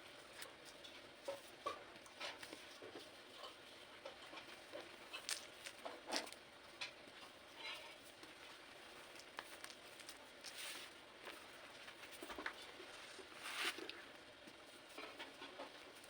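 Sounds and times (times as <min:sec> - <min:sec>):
cornstarch blocks crunching: 0:05.1 - 0:06.4, 0:09.0 - 0:11.4.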